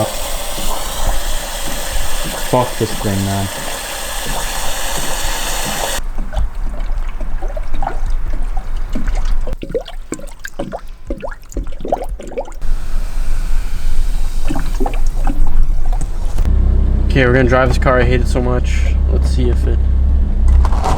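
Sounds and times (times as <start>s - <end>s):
bubbly glugs: 0.0s - 12.8s, 13.6s - 16.5s
water pouring and gurgling: 0.0s - 16.5s.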